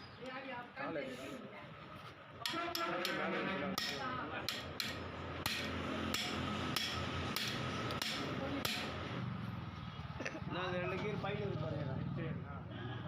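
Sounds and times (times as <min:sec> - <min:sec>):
hammer striking metal: 0:02.4 - 0:09.0.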